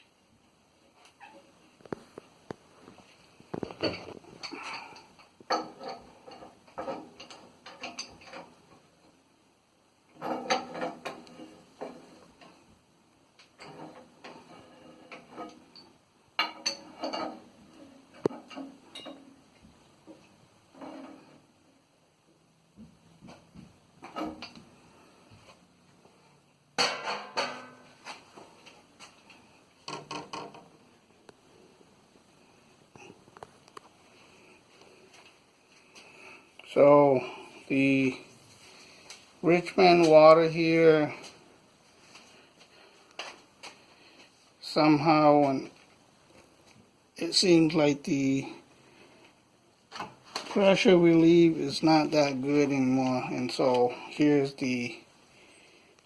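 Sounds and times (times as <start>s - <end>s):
hand tools clinking and scraping metal: 3.5s - 8.8s, 10.1s - 12.6s, 13.4s - 19.4s.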